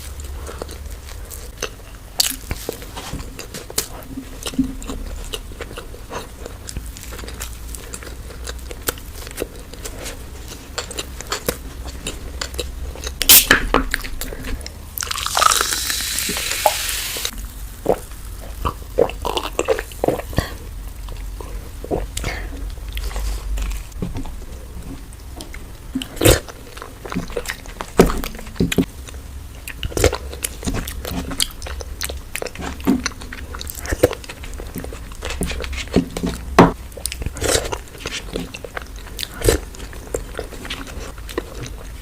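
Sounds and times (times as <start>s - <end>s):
crunchy chewing: 0.0s - 42.0s
hissing noise: 15.2s - 17.3s.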